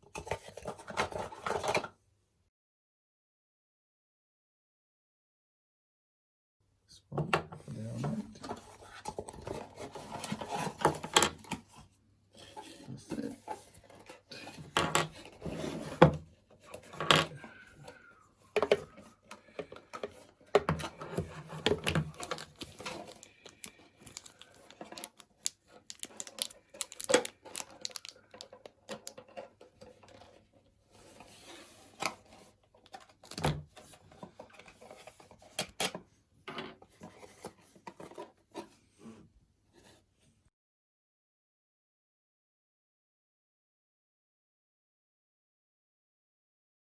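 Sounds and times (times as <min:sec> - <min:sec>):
plastic pieces clicking and rustling: 0:20.6 - 0:29.5.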